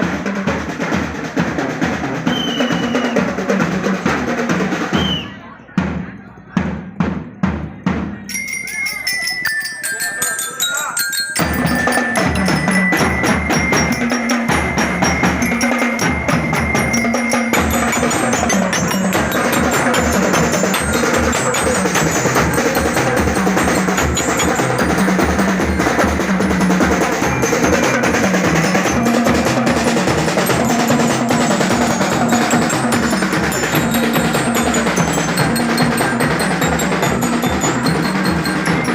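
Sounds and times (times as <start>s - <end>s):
drums: 0.0s - 38.9s
bell-toned mallet percussion: 8.2s - 38.9s.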